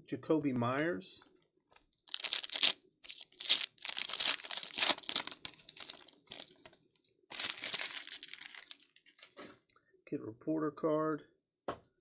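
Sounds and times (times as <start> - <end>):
card pack wrapper tearing and crinkling: 2.1 - 6.7, 7.3 - 9.2.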